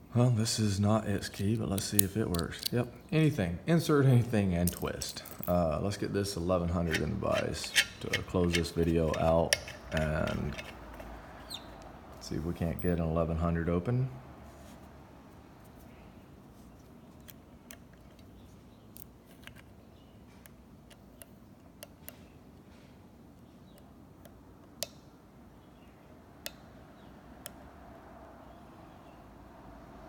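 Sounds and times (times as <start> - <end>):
lock pick clicking in padlock: 1.7 - 2.8, 6.9 - 11.6.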